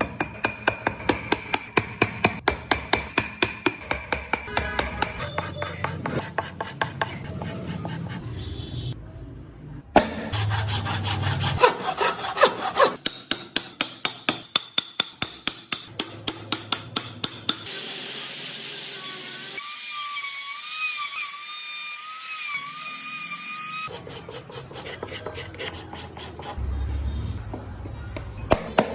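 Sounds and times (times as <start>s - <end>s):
rasping or sawing strokes on wood: 10.4s - 13.0s, 23.8s - 26.6s.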